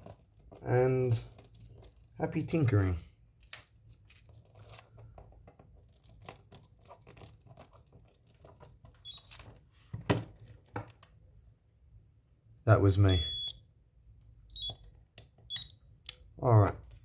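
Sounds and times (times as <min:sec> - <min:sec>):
objects rustling and clicking: 0:00.0 - 0:02.2, 0:03.4 - 0:11.2
high electronic chirp: 0:09.1 - 0:09.3, 0:12.9 - 0:13.6, 0:14.5 - 0:14.8, 0:15.5 - 0:15.8.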